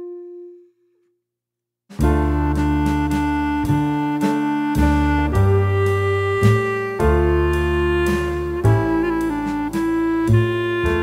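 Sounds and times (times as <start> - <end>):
held musical note: 2.0 - 11.0.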